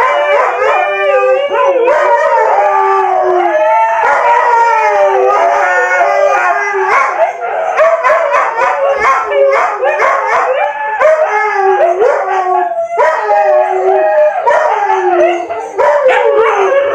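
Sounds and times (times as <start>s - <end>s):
dog howling and yowling: 0.0s - 16.9s
dog yipping: 6.9s - 13.4s, 14.4s - 16.9s.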